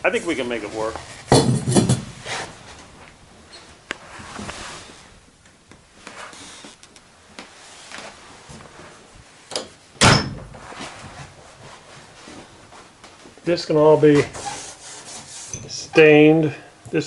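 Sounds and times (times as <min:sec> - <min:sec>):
handling knocks and rustles: 0:00.2 - 0:05.1.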